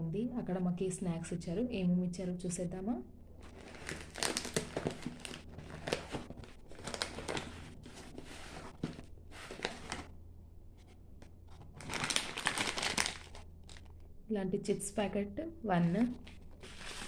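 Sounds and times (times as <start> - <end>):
plastic wrappers crinkling: 3.4 - 10.1, 11.5 - 14.1, 15.9 - 17.0.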